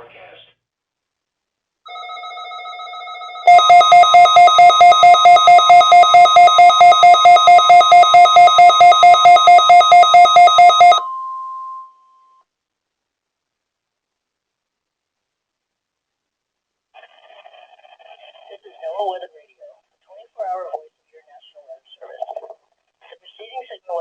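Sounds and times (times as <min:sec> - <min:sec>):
fast pulsing beeping: 0:03.5 - 0:11.0
single steady tone: 0:03.5 - 0:12.5.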